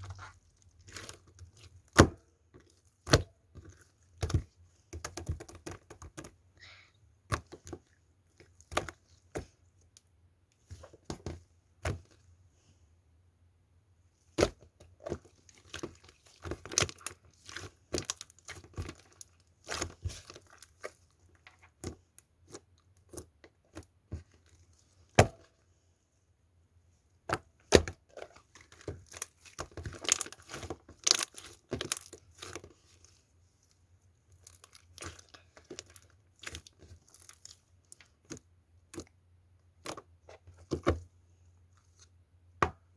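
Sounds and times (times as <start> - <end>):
slime crackling and popping: 28.6 - 32.7.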